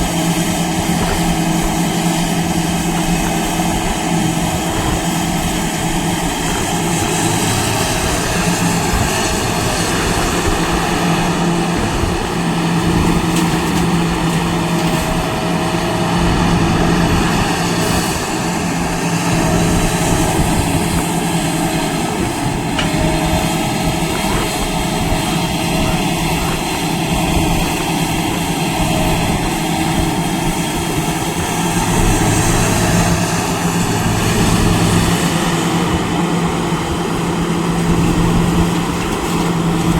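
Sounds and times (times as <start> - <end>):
heavy machine engine droning: 0.0 - 39.9.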